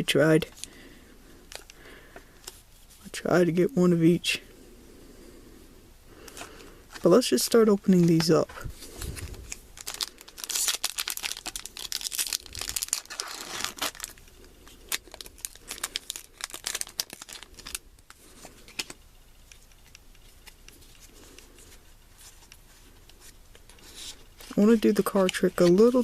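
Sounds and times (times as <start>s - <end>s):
foil wrapper tearing and crinkling: 8.9s - 19.0s.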